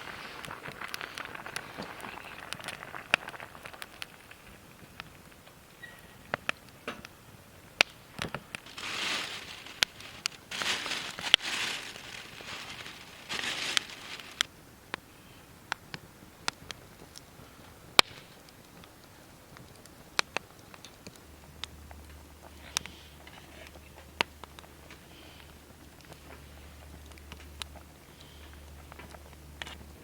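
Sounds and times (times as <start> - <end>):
wood fire crackling: 0.0 - 30.0
rustling and crinkling: 7.8 - 14.5, 15.9 - 30.0.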